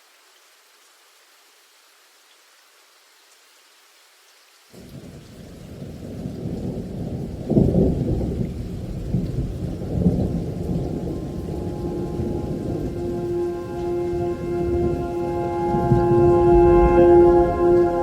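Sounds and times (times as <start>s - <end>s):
rain: 0.0s - 18.0s
thunder rumbling: 5.7s - 18.0s.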